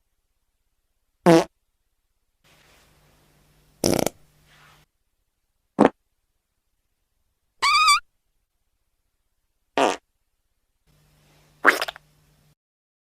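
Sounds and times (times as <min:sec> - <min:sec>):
fart sound effects: 0:01.3 - 0:01.5, 0:03.8 - 0:04.2, 0:05.8 - 0:06.0, 0:09.8 - 0:10.0, 0:11.6 - 0:12.0.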